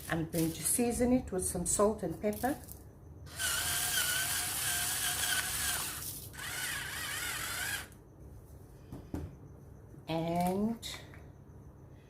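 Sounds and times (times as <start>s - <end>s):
pepper grinder grinding: 3.3s - 7.9s.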